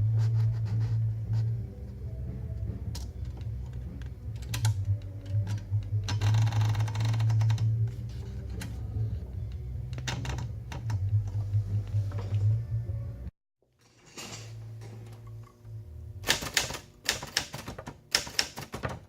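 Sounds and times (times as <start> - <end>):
low hum: 0.0 - 13.3, 14.2 - 16.3
typewriter key strikes: 16.2 - 19.0.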